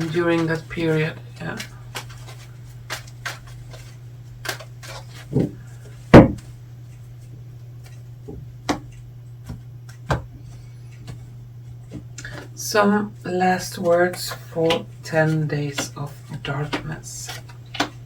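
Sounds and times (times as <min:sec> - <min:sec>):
steady low hum: 0:00.0 - 0:18.0
thump: 0:06.2 - 0:06.4.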